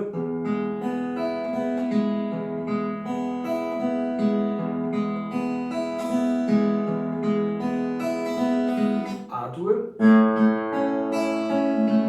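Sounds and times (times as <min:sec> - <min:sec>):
acoustic guitar fingerpicking: 0:00.0 - 0:12.0.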